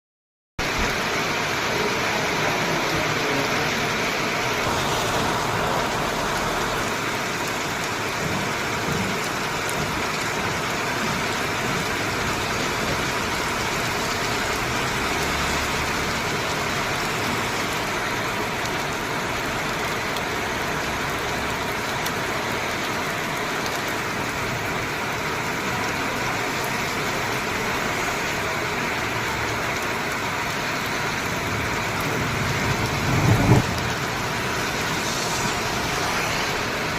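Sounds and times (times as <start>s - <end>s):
steady rain falling: 0.6s - 36.9s
low rumble: 32.0s - 36.4s.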